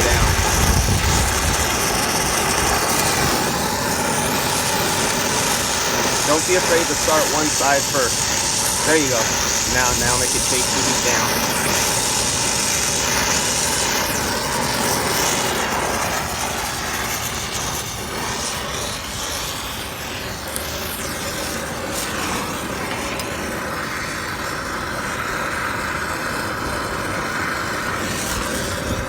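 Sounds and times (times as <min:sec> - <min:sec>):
torch flame hissing: 0:00.0 - 0:29.0.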